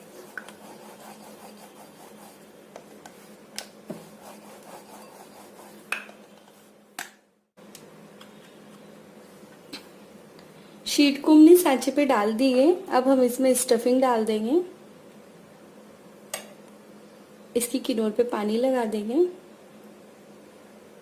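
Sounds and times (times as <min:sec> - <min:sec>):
rolling pin rubbing dough: 0:00.0 - 0:06.8.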